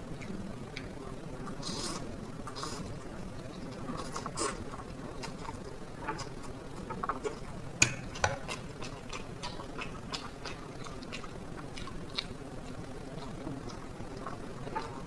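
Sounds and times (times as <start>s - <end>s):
person chewing noodles: 0.0s - 15.0s.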